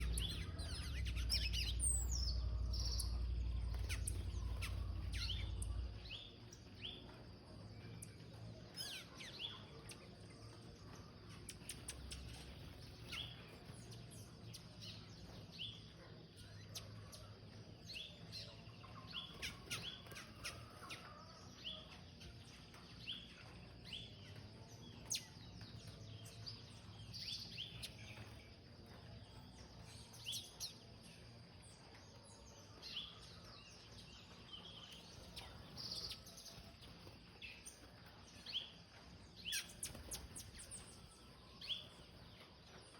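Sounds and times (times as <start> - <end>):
low rumble: 0.0 - 6.2
small bird chirping: 0.0 - 42.9.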